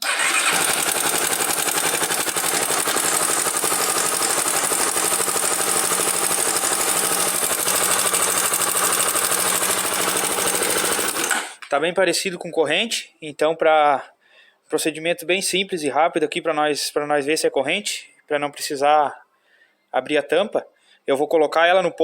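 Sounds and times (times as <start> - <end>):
motorcycle engine idling: 0.0 - 11.3.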